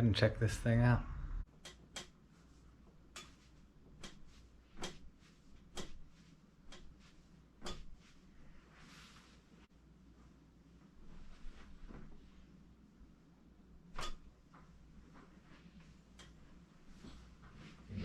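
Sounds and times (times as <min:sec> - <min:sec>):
soft rustle: 0:02.2 - 0:13.4, 0:14.4 - 0:18.0.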